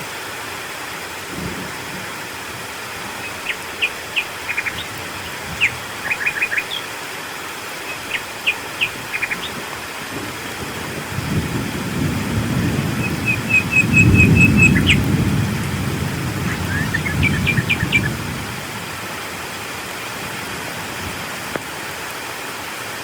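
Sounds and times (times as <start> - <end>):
rain hiss: 0.0 - 23.0
birds chirping: 2.9 - 9.7, 12.9 - 15.1, 16.4 - 18.2
low thunder rumble: 10.1 - 19.0.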